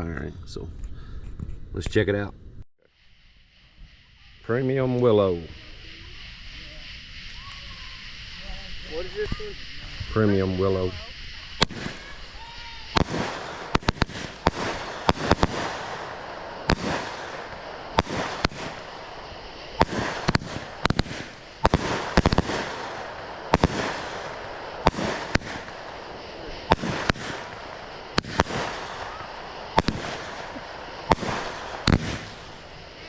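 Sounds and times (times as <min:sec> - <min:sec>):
firework crackle: 0:02.8 - 0:33.0
firework bangs: 0:03.2 - 0:33.0.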